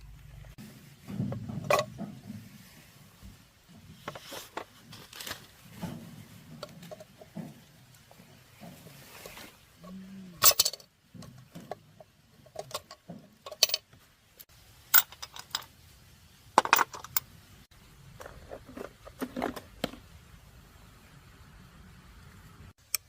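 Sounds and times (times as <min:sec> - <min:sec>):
metal tools clinking: 0:10.4 - 0:10.9, 0:12.4 - 0:13.9, 0:14.9 - 0:15.7.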